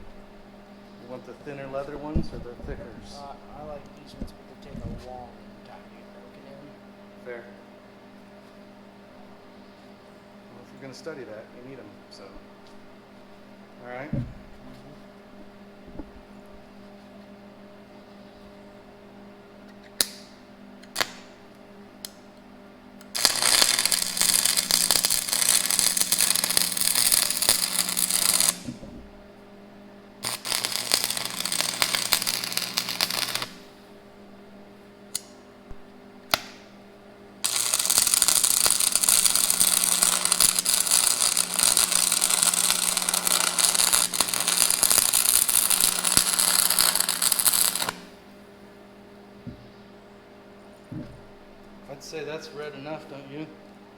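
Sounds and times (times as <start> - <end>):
arc striking snaps: 20.0 - 21.4, 35.1 - 35.4, 36.3 - 36.8
welding arc crackling: 20.9 - 21.4, 23.0 - 29.0, 30.2 - 33.8, 36.3 - 36.7, 37.4 - 48.2.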